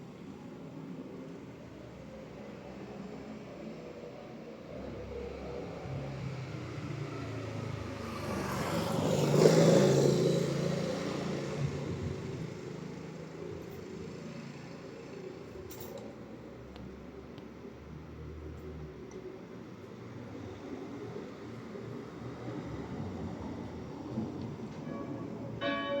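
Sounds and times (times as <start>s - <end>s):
vehicle passing by: 5.2s - 12.6s.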